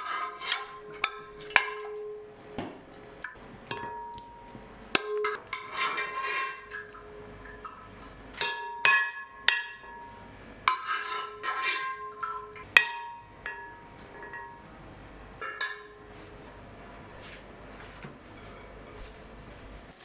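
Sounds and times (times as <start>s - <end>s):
metal cookware clinking: 0.0s - 16.5s.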